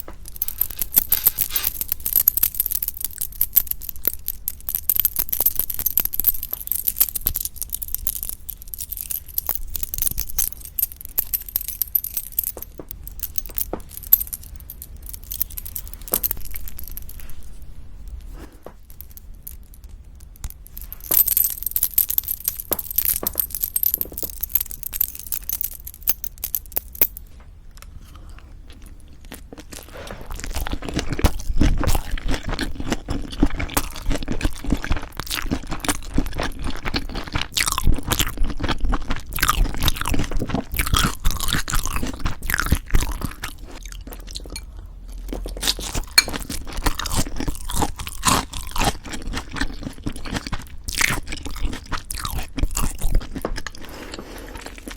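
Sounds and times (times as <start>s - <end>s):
spoon clinking and scraping bowl: 0.3s - 7.6s, 45.7s - 47.2s.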